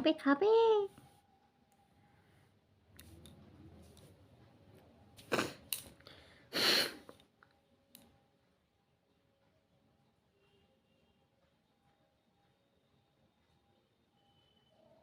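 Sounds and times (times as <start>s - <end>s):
person sneezing: 5.2s - 5.7s, 6.5s - 7.1s.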